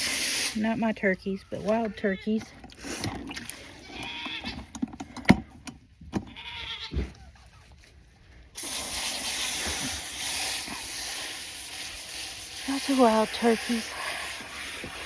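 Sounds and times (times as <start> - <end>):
goat bleating: 3.8 - 4.6, 6.3 - 7.4
knocks and handling sounds: 4.4 - 6.3.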